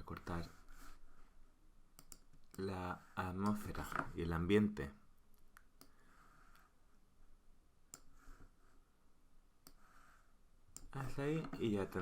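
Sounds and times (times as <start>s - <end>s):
computer mouse clicks: 2.0s - 2.6s, 7.9s - 8.1s, 9.6s - 9.8s.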